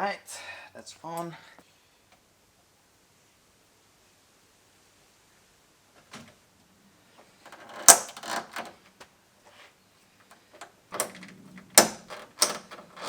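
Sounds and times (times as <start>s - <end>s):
car parts and tools clicking: 10.6s - 13.0s.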